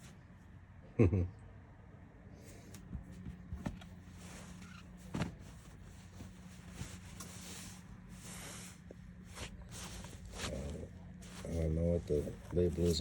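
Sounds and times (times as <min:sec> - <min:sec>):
steady low hum: 0:00.0 - 0:13.0
fabric rustling: 0:02.6 - 0:13.0.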